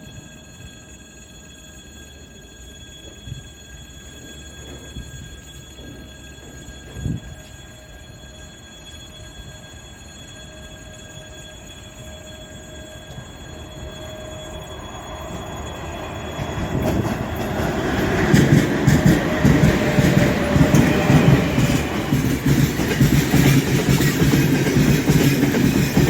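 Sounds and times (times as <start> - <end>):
freight train approaching: 0.0 - 26.0
train wheels squealing: 0.0 - 26.0
wheels clattering over rail joints: 15.2 - 26.0.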